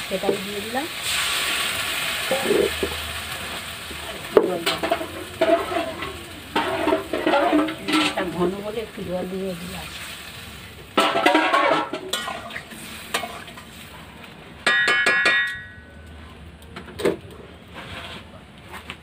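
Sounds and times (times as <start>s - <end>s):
metal spoon scraping in pot: 2.3s - 3.0s, 4.6s - 8.6s.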